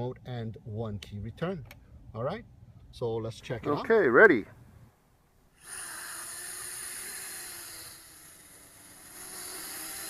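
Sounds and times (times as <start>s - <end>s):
quadcopter motors whining: 5.6s - 10.0s.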